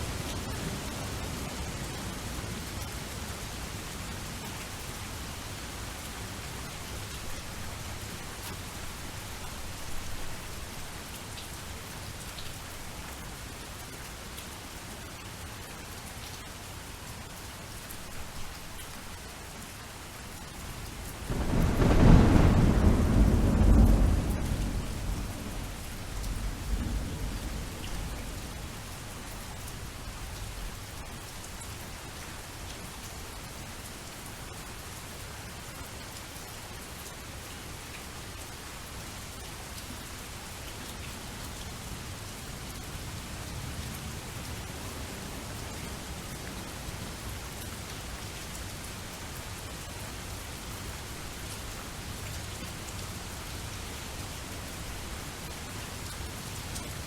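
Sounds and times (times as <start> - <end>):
steady rain falling: 0.0 - 57.0
thunder rumble: 21.2 - 28.8.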